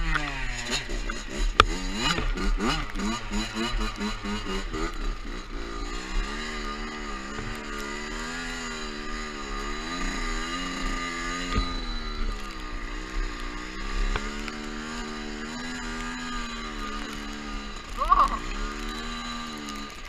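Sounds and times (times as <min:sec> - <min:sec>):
dirt bike engine revving: 0:00.0 - 0:20.0.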